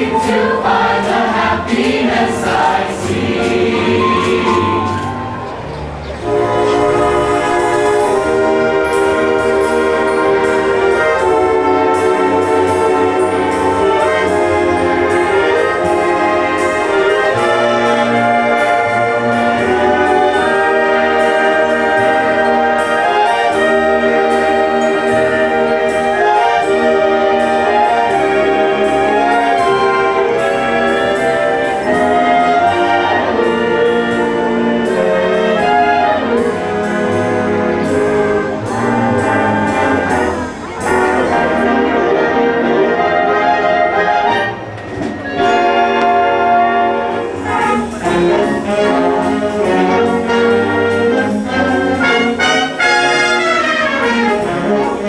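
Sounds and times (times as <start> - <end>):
steady cymbal beat: 0.0 - 12.7
brass band playing: 0.0 - 55.0.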